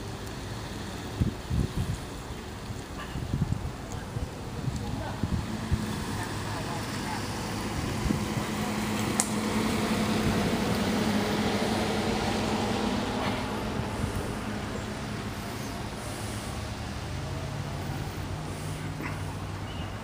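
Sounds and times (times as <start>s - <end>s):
road and wind noise: 0.0s - 20.0s
vehicle engine running: 0.0s - 20.0s.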